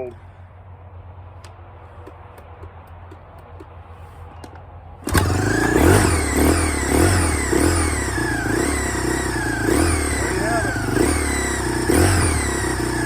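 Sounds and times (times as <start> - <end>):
dirt bike engine starting and revving: 5.0 - 13.0.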